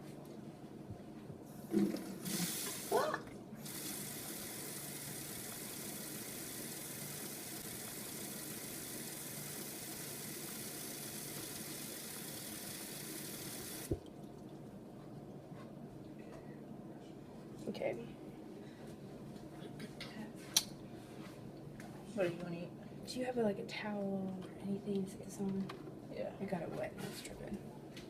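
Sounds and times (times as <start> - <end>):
tap water filling plastic bottle: 1.7 - 2.9, 3.6 - 14.6.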